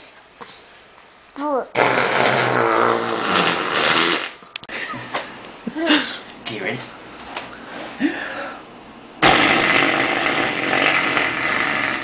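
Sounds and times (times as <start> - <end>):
lips blowing raspberry: 1.7 - 4.4, 9.2 - 12.0.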